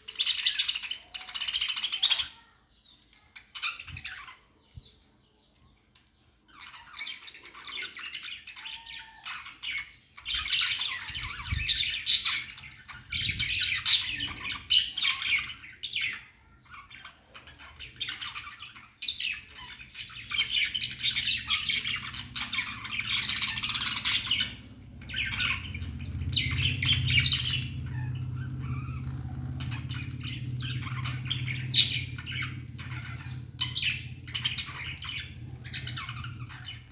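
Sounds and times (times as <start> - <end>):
budgerigars chattering: 6.6 - 36.9
low steady hum: 19.4 - 36.9.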